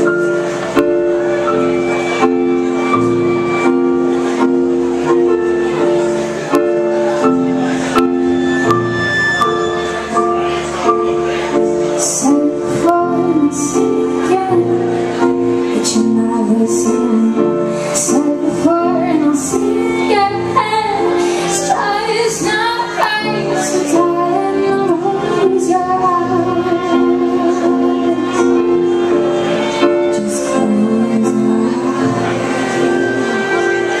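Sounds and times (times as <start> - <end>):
live band playing chords: 0.0 - 34.0
woman singing: 12.0 - 28.8, 30.0 - 32.3.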